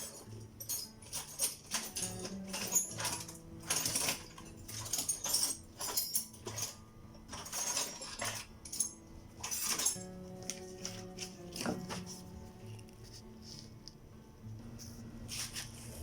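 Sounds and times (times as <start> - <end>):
hand tools clinking on metal: 0.0 - 12.2.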